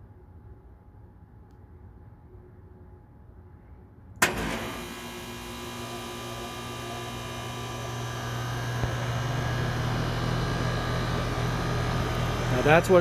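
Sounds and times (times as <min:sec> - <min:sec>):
air conditioner compressor hum: 0:04.2 - 0:13.0
compressor clunk: 0:04.2 - 0:13.0.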